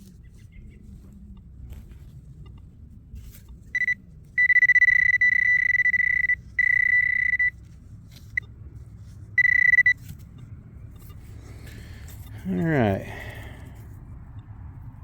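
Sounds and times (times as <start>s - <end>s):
metal detector beeping: 3.7s - 7.6s, 9.4s - 10.0s.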